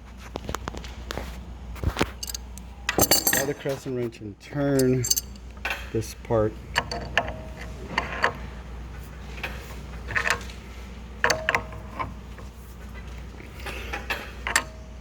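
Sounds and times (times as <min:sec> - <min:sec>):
wrench clicking on metal: 0:02.2 - 0:02.4, 0:04.8 - 0:05.4.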